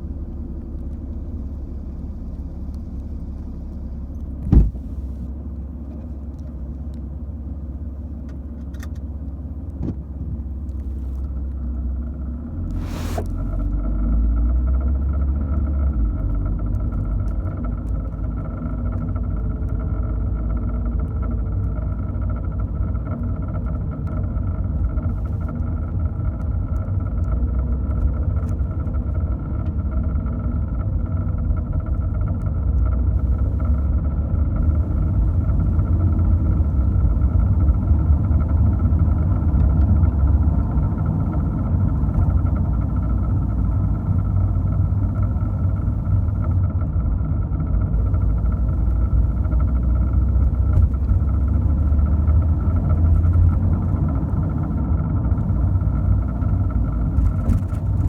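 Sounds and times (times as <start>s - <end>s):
car engine running: 0.0s - 58.0s.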